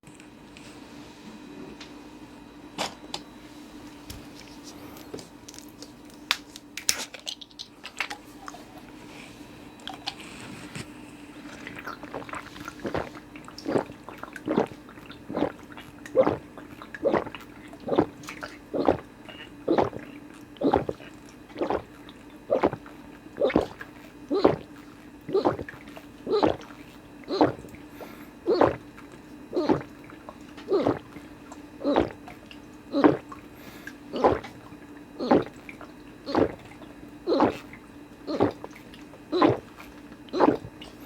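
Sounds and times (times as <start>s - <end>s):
person gulping a drink: 11.4s - 41.0s.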